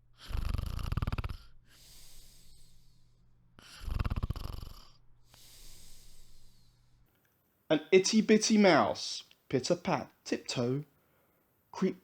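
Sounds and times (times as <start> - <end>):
person snoring: 0.2 - 2.9, 3.6 - 6.5
soft breath out: 1.3 - 4.0, 5.2 - 7.1.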